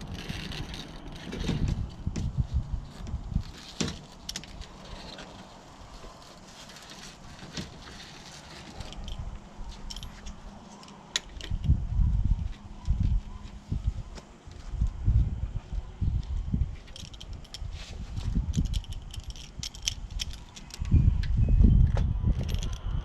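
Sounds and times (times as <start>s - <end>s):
small tool clicks and clinks: 16.9s - 17.7s, 18.5s - 20.9s.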